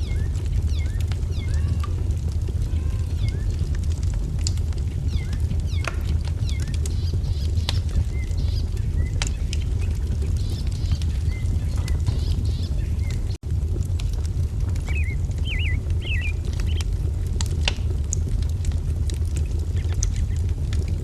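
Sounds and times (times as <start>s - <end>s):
small birds chirping: 0.0s - 2.0s, 2.6s - 3.8s, 4.5s - 13.4s, 14.8s - 17.0s, 19.7s - 20.5s
low rumble: 0.0s - 21.0s
wood fire crackling and popping: 0.0s - 21.0s.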